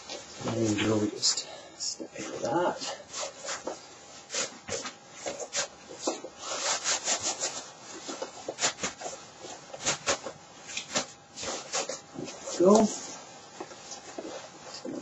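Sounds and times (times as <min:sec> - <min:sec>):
foam rubbing against nylon: 0:03.1 - 0:13.2.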